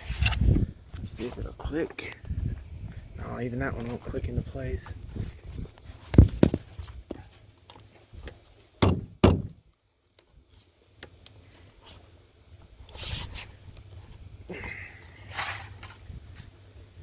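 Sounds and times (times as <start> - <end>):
soft rustle: 0.0 - 8.7, 10.2 - 14.4
plastic trim knocking and thumping: 8.8 - 9.6.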